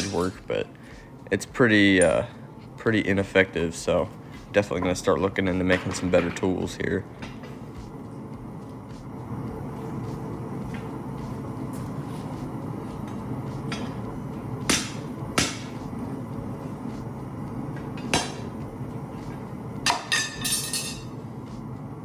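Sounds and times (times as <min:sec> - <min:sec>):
steady low rumble: 0:06.6 - 0:22.0
hammer striking metal on anvil: 0:14.6 - 0:15.8, 0:19.8 - 0:21.1.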